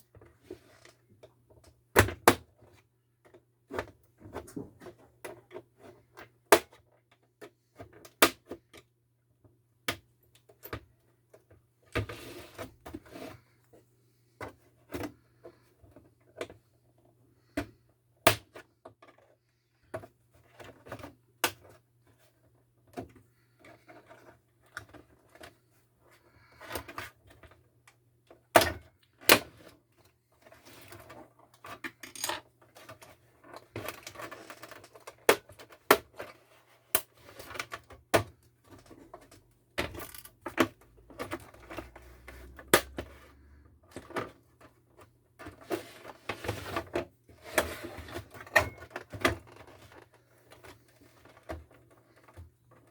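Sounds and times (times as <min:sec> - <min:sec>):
tools clicking and tapping: 0:31.8 - 0:32.4, 0:39.8 - 0:40.8.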